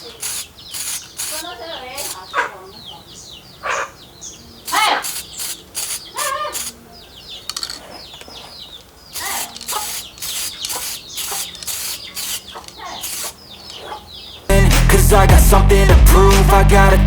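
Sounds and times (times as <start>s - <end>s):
aerosol can spraying hiss: 0.0s - 2.3s, 4.7s - 6.8s, 9.2s - 13.4s
birds chirping: 0.0s - 15.3s.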